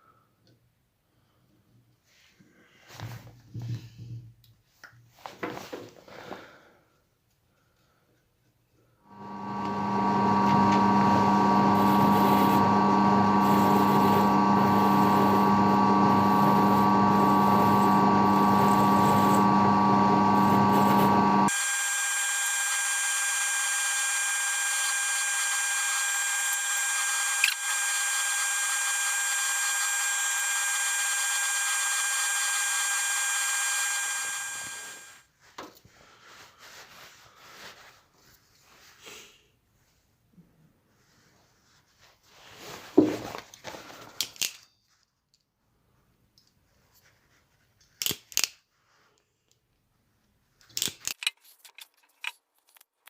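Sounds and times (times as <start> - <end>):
electric drill whining: 9.1 - 35.3.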